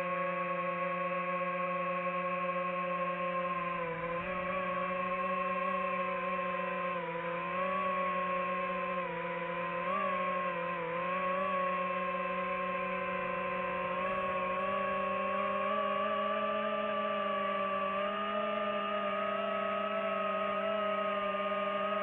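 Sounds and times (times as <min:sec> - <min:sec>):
drone propellers whining: 0:00.0 - 0:22.0.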